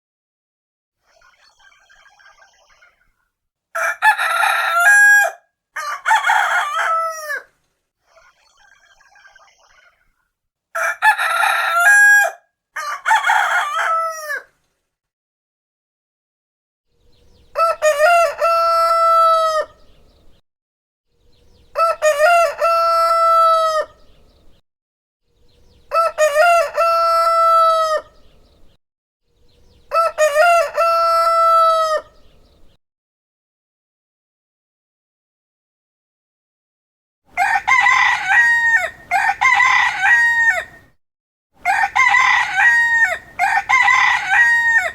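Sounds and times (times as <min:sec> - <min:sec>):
rooster crowing: 0:03.8 - 0:07.5, 0:10.8 - 0:14.5, 0:17.5 - 0:19.8, 0:21.7 - 0:24.0, 0:25.9 - 0:28.1, 0:29.9 - 0:32.1, 0:37.3 - 0:40.9, 0:41.6 - 0:44.9.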